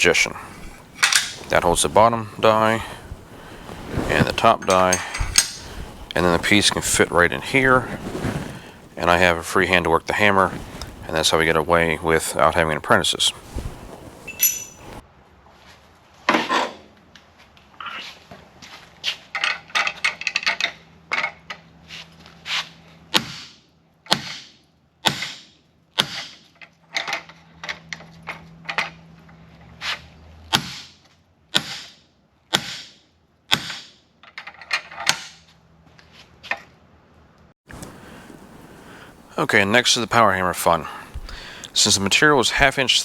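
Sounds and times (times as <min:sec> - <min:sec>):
low steady hum: 0:00.0 - 0:15.0
hammer striking hot steel: 0:04.6 - 0:05.7.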